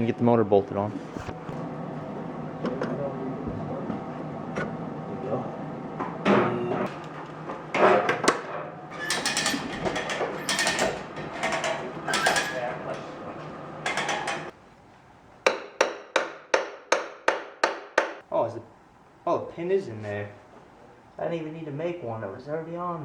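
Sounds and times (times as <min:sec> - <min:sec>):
metal parts clinking and scraping: 0:08.9 - 0:13.1.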